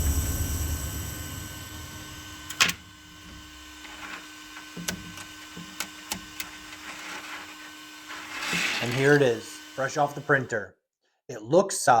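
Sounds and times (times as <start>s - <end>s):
printer humming: 0.0s - 10.6s
sharp clicks: 4.8s - 6.6s.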